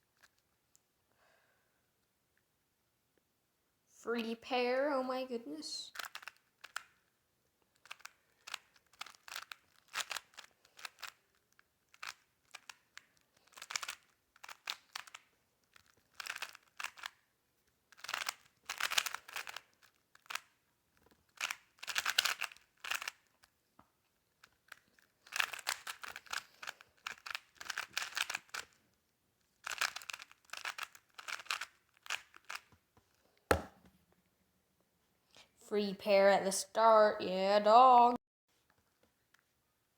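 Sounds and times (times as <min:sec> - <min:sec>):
plastic puzzle cube clicking: 0:05.9 - 0:17.3, 0:17.9 - 0:23.6, 0:24.4 - 0:28.8, 0:29.6 - 0:32.9.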